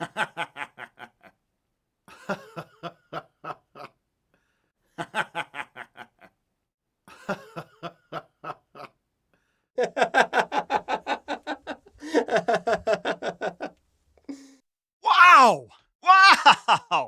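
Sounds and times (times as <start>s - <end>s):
man laughing in rhythmic bursts: 0.0s - 1.4s, 2.1s - 4.0s, 5.0s - 6.4s, 7.1s - 9.0s, 9.8s - 14.6s, 16.2s - 17.0s.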